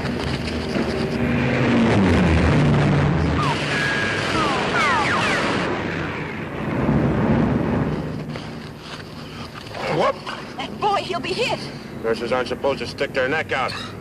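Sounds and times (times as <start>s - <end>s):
engine drone: 0.0s - 14.0s
short falling whines: 1.3s - 7.9s
explosions rumbling: 1.3s - 8.3s.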